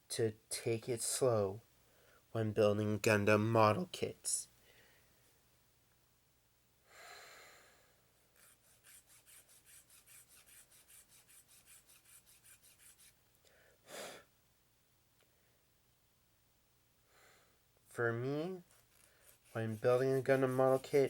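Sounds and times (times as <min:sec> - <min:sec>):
person breathing: 0:01.8 - 0:02.3, 0:04.6 - 0:05.4, 0:06.8 - 0:08.2, 0:13.4 - 0:14.3, 0:17.0 - 0:17.6
sniff: 0:06.9 - 0:08.1, 0:13.4 - 0:14.3
file rasping plastic: 0:08.4 - 0:13.2, 0:18.6 - 0:21.0.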